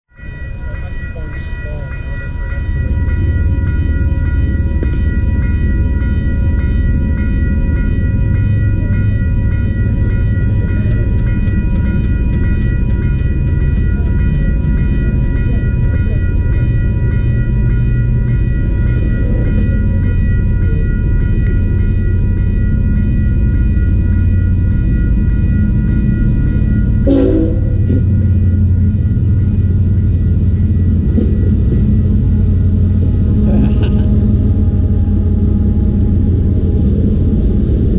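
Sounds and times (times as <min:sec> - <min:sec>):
freight train rumble: 0:00.1 - 0:37.9
train wheels clicking: 0:00.8 - 0:20.2.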